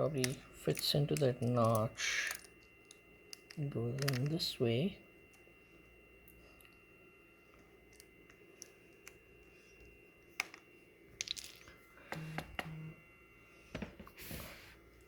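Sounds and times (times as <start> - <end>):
plastic and metal parts clicking: 3.3 - 4.4.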